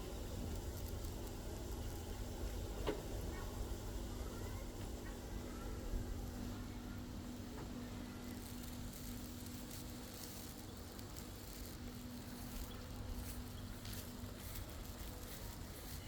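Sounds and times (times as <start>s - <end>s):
faint crackling: 5.5s - 16.0s
insect buzzing: 8.1s - 16.0s.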